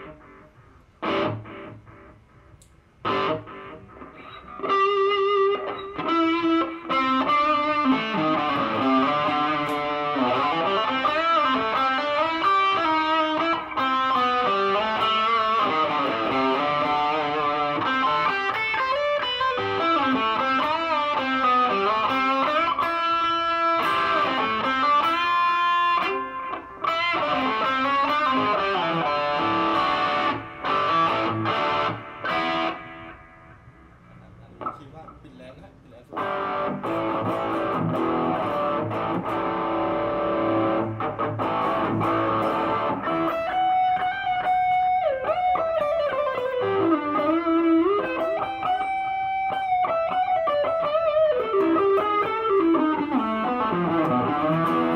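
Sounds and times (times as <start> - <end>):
electric guitar playing: 0.0 - 34.9, 36.1 - 54.9.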